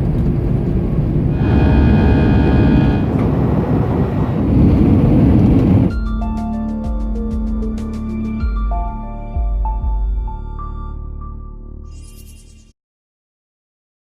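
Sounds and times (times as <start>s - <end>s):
jet engines roaring: 0.0s - 5.9s
steady engine whine: 0.0s - 6.0s
music: 5.9s - 12.8s.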